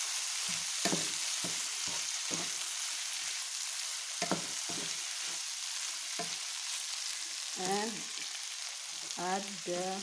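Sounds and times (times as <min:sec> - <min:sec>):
food sizzling in hot oil: 0:00.0 - 0:10.0
utensil scraping and knocking pan: 0:00.9 - 0:02.6.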